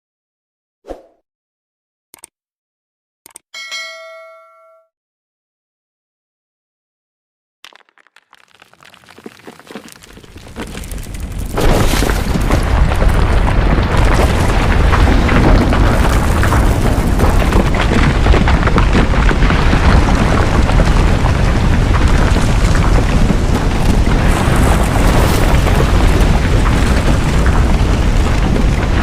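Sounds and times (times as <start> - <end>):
rocks tumbling and clattering: 7.6 - 29.0.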